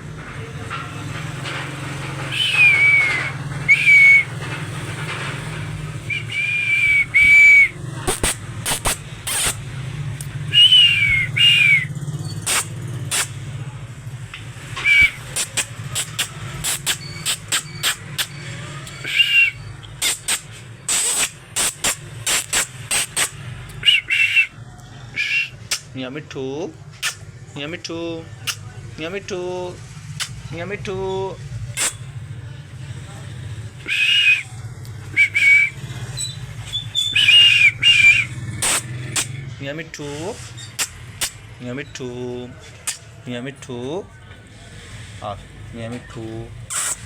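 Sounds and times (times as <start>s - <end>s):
parrot whistling: 2.3s - 4.4s, 6.0s - 8.4s, 10.5s - 13.3s, 14.8s - 25.9s, 33.8s - 39.4s, 46.7s - 47.0s
sharp clicks: 8.1s - 9.6s, 12.4s - 13.4s, 14.3s - 19.1s, 19.8s - 23.8s, 27.0s - 27.2s, 30.1s - 30.4s, 31.7s - 32.0s, 38.6s - 39.3s, 40.7s - 41.4s, 42.8s - 43.1s.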